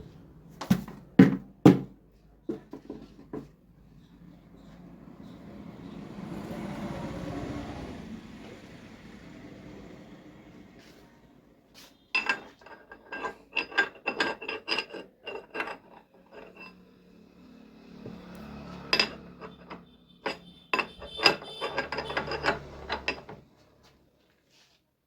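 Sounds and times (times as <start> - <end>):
metal parts clinking and knocking: 12.2 - 16.8, 18.9 - 23.4.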